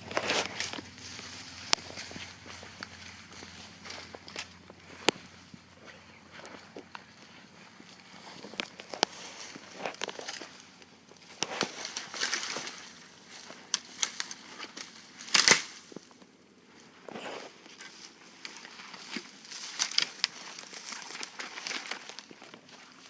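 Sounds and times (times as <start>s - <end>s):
footsteps crunching through dry leaves: 0.0s - 23.0s
sharp crack: 13.7s - 16.0s.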